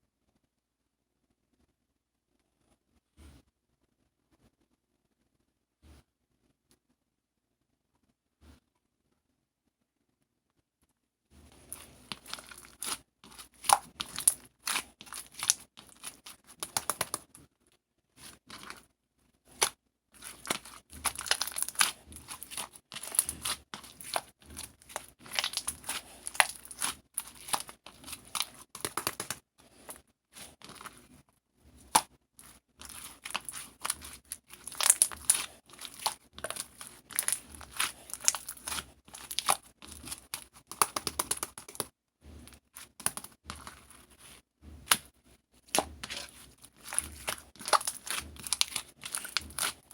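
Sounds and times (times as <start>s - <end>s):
material crinkling and tearing: 11.4s - 17.5s, 18.2s - 18.9s, 19.5s - 49.9s.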